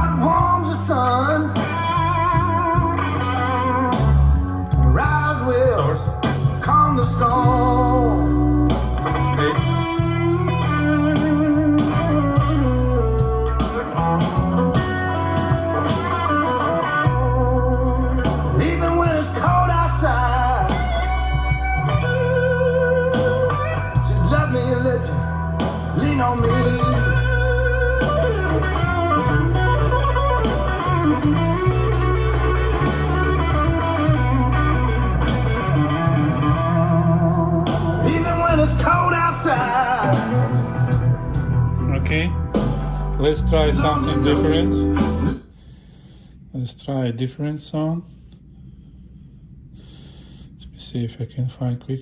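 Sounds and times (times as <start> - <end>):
person singing: 0.0 - 2.8, 4.8 - 9.8, 18.2 - 22.1, 23.1 - 29.8, 35.6 - 41.2, 43.1 - 45.4
bass line: 0.0 - 45.5
electric guitar: 0.0 - 45.5
blues-rock song on hi-fi: 0.0 - 46.5.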